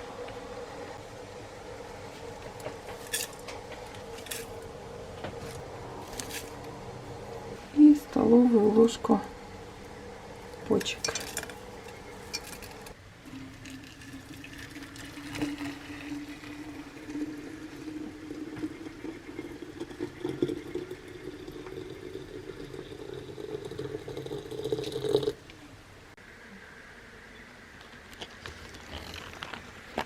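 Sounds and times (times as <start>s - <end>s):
hot water pouring into vessel: 1.2s - 25.4s.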